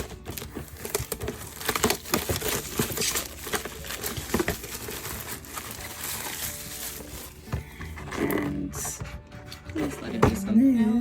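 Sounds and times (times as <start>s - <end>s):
plastic wrapper crinkling: 0.0s - 7.6s.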